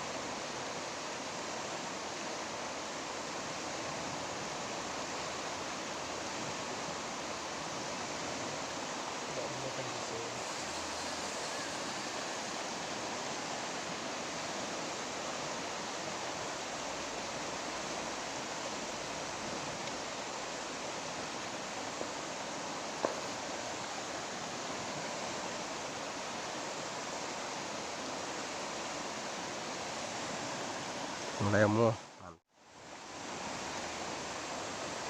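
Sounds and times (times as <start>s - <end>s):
river water flowing: 0.0s - 35.0s.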